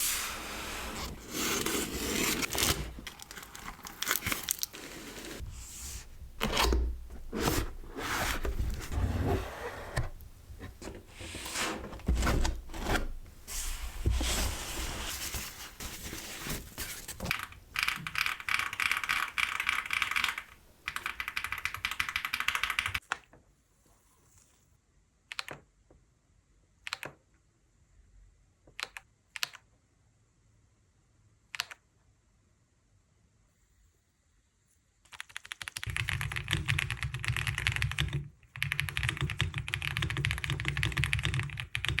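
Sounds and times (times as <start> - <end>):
cardboard and plastic rustling: 0.0 - 17.7.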